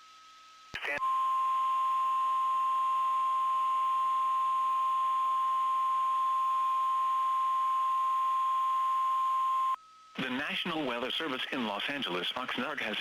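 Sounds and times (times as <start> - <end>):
steady alarm tone: 1.0 - 9.8.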